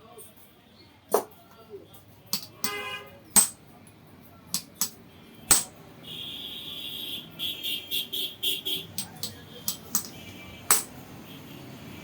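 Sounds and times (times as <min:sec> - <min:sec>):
hammer striking iron on anvil: 0:03.4 - 0:03.6, 0:04.6 - 0:05.8, 0:09.0 - 0:10.1, 0:10.7 - 0:10.9.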